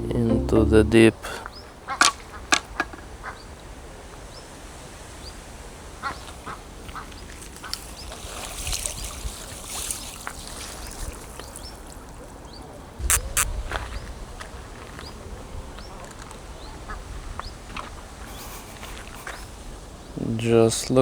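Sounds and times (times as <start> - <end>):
ducklings peeping: 13.0 - 13.5
ducks quacking: 13.0 - 13.5, 18.2 - 19.6.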